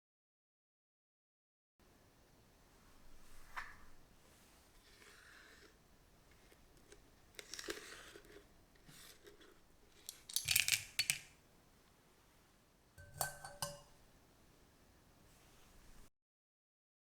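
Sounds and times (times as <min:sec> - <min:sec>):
dishes and utensils clattering: 0:13.0 - 0:14.1.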